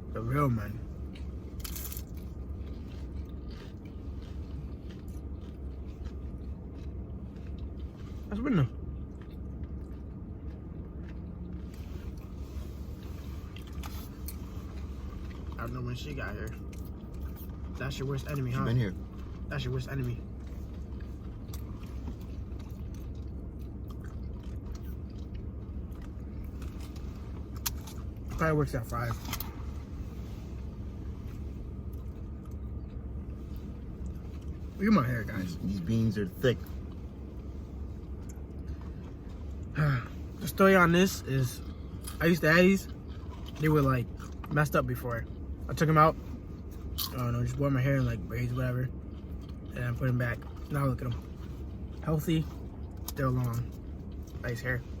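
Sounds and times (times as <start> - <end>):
steady low hum: 0.0 - 55.0
steady low rumble: 0.0 - 55.0
chewing crunchy chips: 0.5 - 29.9, 31.2 - 45.9, 46.6 - 55.0
person crunching chips: 1.5 - 8.1.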